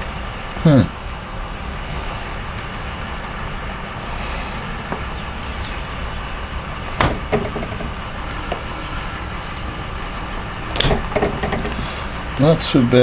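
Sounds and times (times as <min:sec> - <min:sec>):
low background rumble: 0:00.0 - 0:13.0
sharp knocks: 0:07.0 - 0:08.6, 0:10.8 - 0:11.9.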